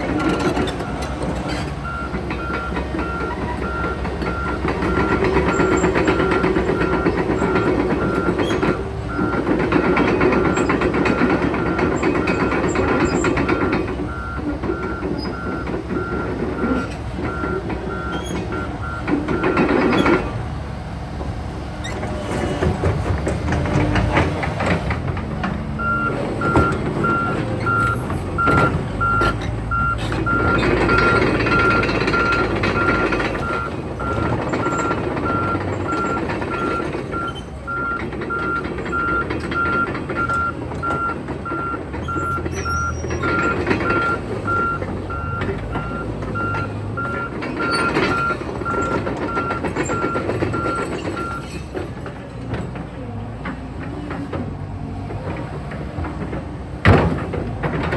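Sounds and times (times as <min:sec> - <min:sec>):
diesel engine and hydraulics: 0:00.0 - 0:57.9
excavator travel alarm beeping: 0:00.1 - 0:20.4, 0:25.7 - 0:51.5.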